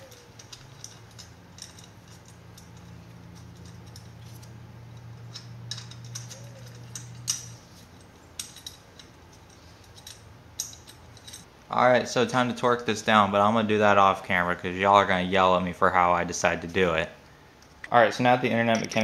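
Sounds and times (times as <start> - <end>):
light metallic clicks and clinks: 0.0 - 11.5, 18.5 - 19.0
low steady hum: 0.0 - 19.0.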